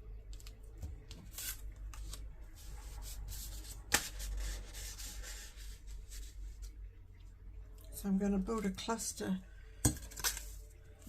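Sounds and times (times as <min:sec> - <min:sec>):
paper rustling and rubbing: 0:01.2 - 0:06.8.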